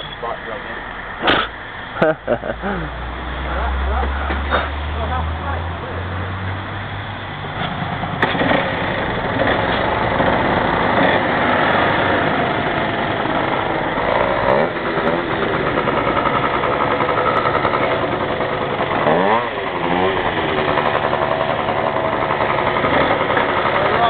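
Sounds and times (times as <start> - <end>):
motorcycle engine revving: 2.6 - 24.0.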